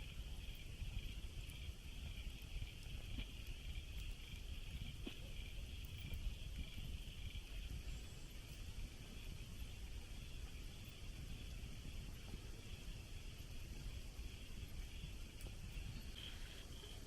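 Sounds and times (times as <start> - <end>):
crickets chirping: 0.0 - 17.0
wind rumble on microphone: 0.0 - 17.0.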